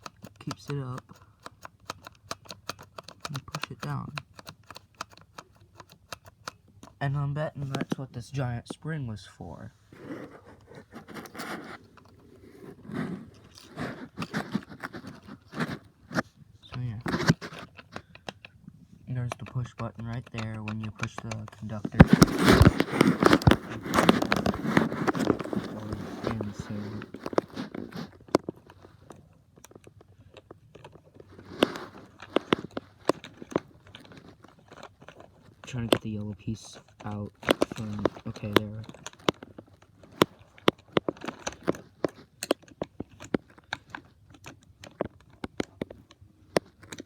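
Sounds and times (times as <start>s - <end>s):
small clicks: 0.0s - 8.9s, 10.6s - 47.0s
plastic toy parts handled: 0.0s - 47.0s
short scrapes: 9.7s - 18.0s.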